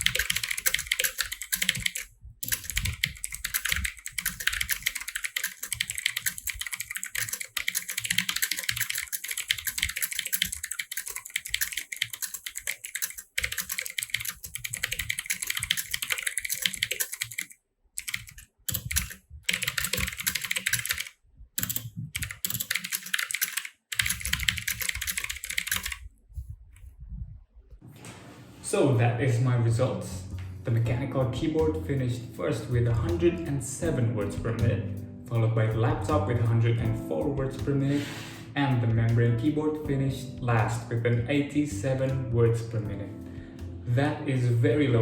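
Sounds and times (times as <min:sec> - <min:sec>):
fast typing on keyboard: 0:00.0 - 0:26.0.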